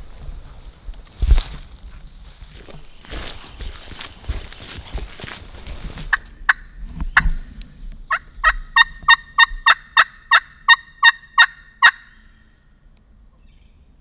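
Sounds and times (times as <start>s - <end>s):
turkey call clucks and yelps: 8.1s - 12.5s.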